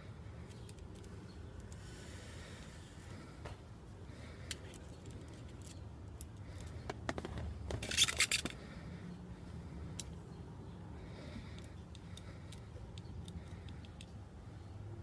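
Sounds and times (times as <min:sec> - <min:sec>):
small screws clicking and rattling: 0:00.4 - 0:01.9, 0:04.4 - 0:08.6, 0:11.5 - 0:14.2.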